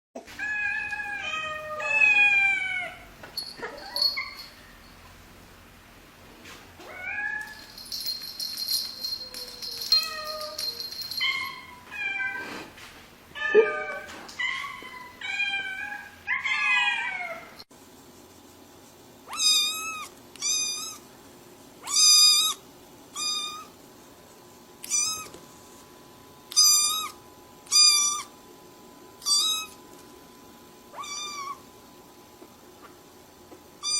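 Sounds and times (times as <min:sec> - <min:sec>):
cats and kittens meowing: 0:00.3 - 0:04.8, 0:06.8 - 0:07.7, 0:09.0 - 0:12.7, 0:13.4 - 0:17.6, 0:19.3 - 0:21.0, 0:21.8 - 0:23.7, 0:24.8 - 0:25.4, 0:26.5 - 0:28.3, 0:30.9 - 0:31.6.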